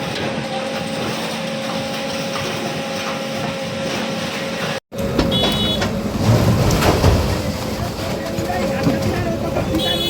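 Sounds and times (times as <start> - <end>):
bulldozer engine running: 0.0 - 10.0.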